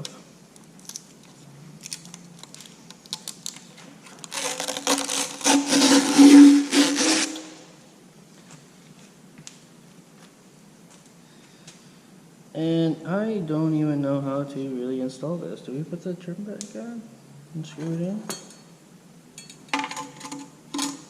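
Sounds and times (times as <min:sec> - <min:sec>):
tape ripping screech: 0:04.2 - 0:07.8.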